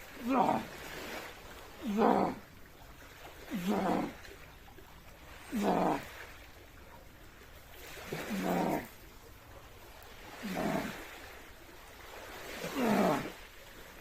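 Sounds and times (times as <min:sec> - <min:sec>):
man grunting with effort: 0:00.1 - 0:00.8, 0:01.8 - 0:02.4, 0:03.5 - 0:04.2, 0:05.5 - 0:06.1, 0:08.2 - 0:08.9, 0:10.4 - 0:11.0, 0:12.6 - 0:13.4.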